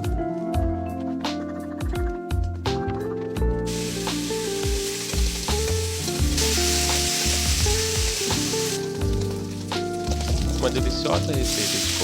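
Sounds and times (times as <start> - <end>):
background music: 0.0 - 12.0
food sizzling in a hot pan: 3.7 - 12.0.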